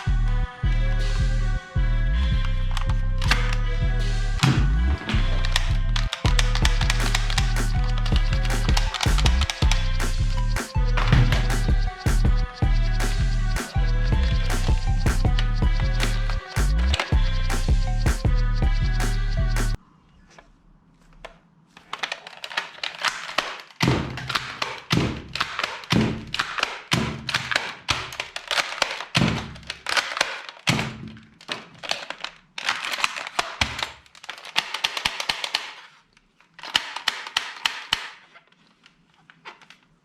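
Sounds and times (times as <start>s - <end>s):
toy gun plastic clicks: 21.2s - 30.7s, 31.4s - 39.8s.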